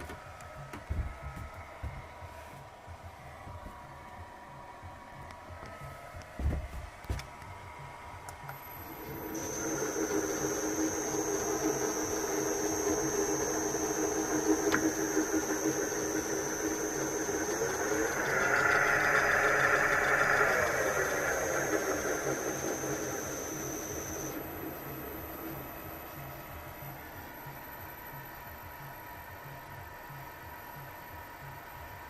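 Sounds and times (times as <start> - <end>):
drill press motor humming and whining: 8.5 - 32.0.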